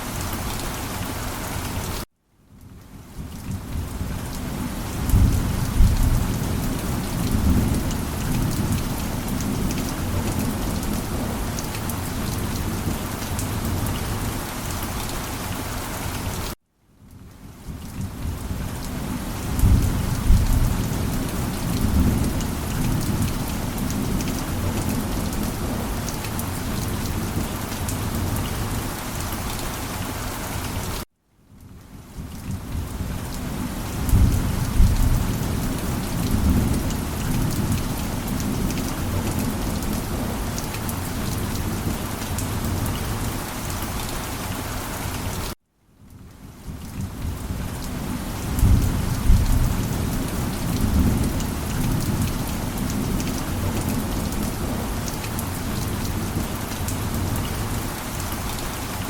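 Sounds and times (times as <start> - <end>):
heavy rain: 0.0 - 59.0
thunder rumbling: 3.5 - 11.6, 19.4 - 28.7, 33.9 - 43.2, 48.4 - 56.5.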